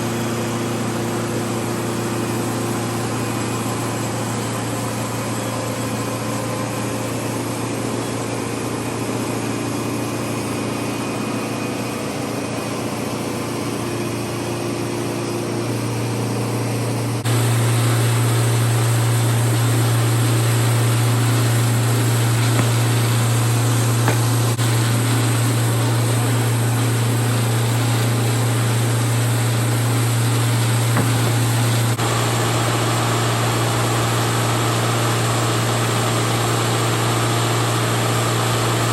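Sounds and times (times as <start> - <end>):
sawmill machinery humming: 0.0 - 38.9.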